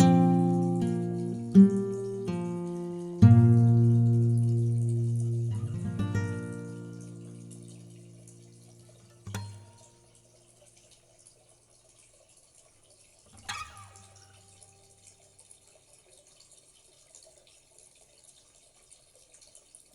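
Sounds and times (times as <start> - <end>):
acoustic guitar strum: 0.0 - 8.2, 9.2 - 9.8, 13.4 - 14.2
trickling dripping water: 0.0 - 19.9.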